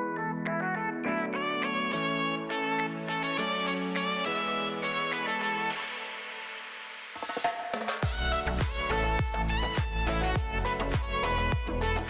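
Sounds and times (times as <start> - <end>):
steady drum beat: 7.5 - 12.0
bowed string or synth melody: 8.0 - 12.0.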